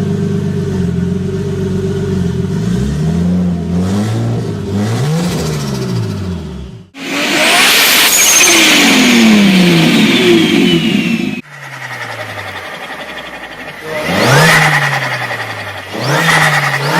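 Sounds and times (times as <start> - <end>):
turbocharged car engine revving: 0.9 - 16.9
car engine rushing hiss: 7.0 - 16.9
high falling whistle: 7.0 - 16.9.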